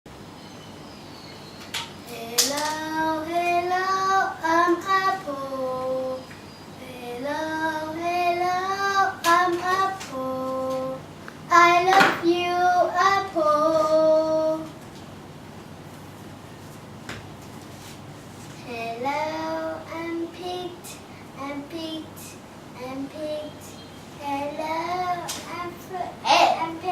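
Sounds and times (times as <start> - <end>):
child singing: 2.1 - 14.8, 18.6 - 26.9.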